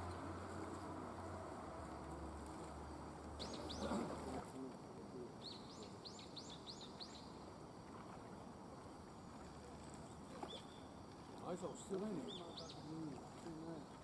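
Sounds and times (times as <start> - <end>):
small bird chirping: 3.4 - 3.9.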